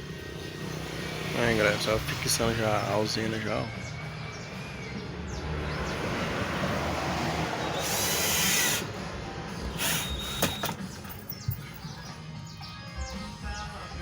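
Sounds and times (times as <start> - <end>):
power drill driving screws: 7.7 - 9.0, 9.8 - 10.9.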